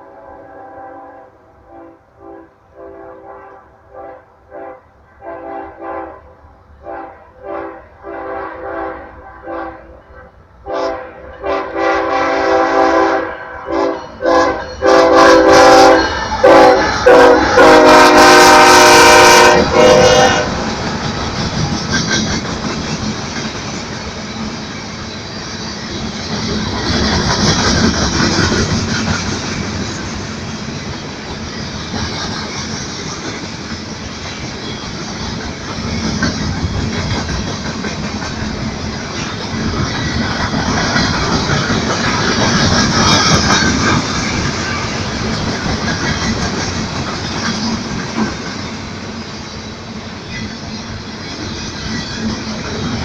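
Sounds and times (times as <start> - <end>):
locomotive air horn blasts: 0.0 - 6.2, 6.8 - 10.0, 10.6 - 20.7
train rumble with rail noise: 0.0 - 53.0.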